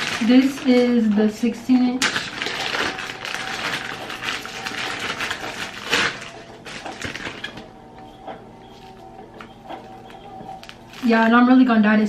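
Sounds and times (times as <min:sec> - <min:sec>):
packaging rustling and crinkling: 0:00.0 - 0:07.7, 0:08.7 - 0:11.4
loud crackle: 0:02.0 - 0:07.5.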